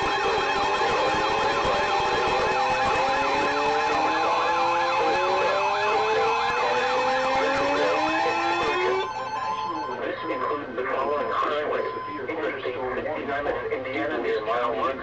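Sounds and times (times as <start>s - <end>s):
rising siren wail: 0.0s - 10.7s
fast warbling siren yelp: 0.0s - 12.2s
steady tones: 0.0s - 12.4s.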